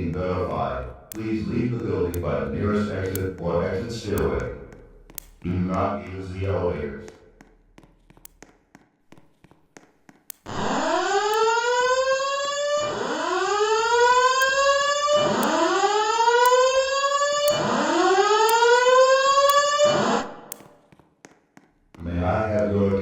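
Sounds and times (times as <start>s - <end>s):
alarm whoop tone: 10.5s - 20.3s.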